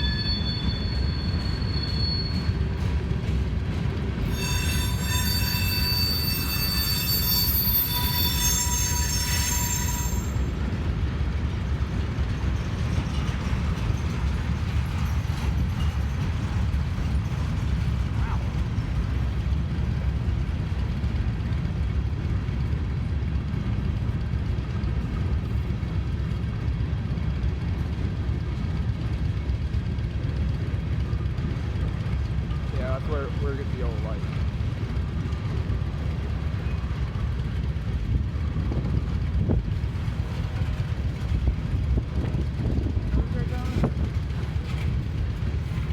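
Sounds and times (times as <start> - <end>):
high-pitched brake squeal: 0.0 - 2.8, 4.2 - 10.6
freight cars rumbling on rails: 0.0 - 45.9.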